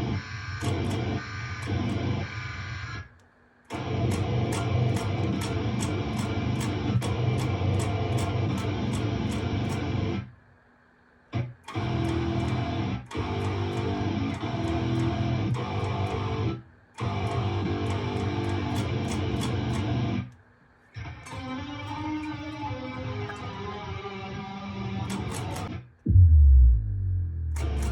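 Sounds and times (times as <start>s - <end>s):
cymbal hits: 26.1s - 27.9s
metalcore music: 26.1s - 27.9s
pitched tone bending: 26.1s - 27.9s.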